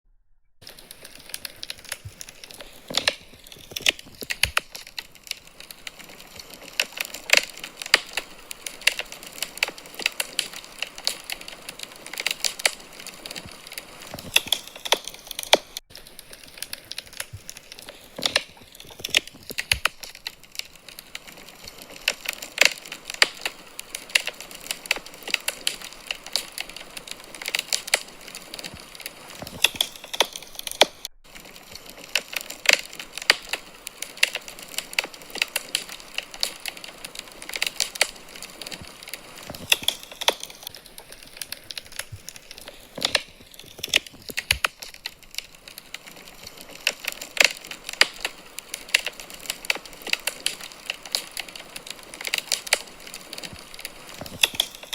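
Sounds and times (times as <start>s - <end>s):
fireplace fire crackling: 0.6s - 54.9s.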